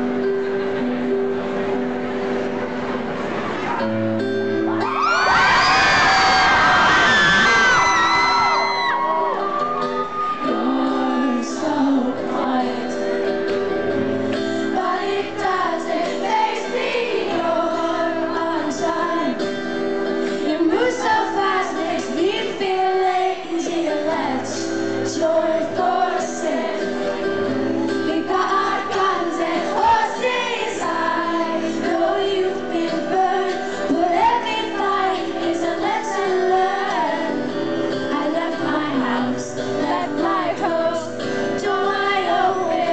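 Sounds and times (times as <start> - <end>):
keyboard and bass: 0.0 - 42.9
woman singing: 10.4 - 13.6, 14.6 - 19.5, 20.4 - 27.2, 27.9 - 42.9.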